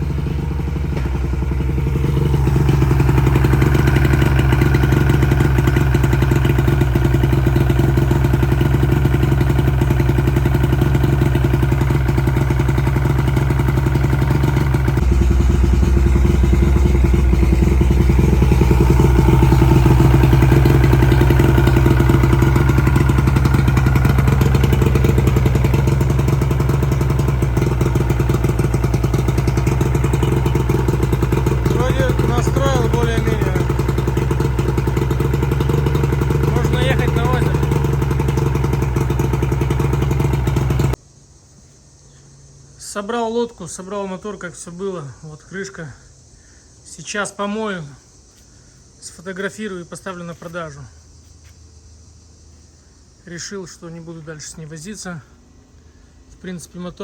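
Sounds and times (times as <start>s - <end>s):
outboard motor running: 0.0s - 41.0s.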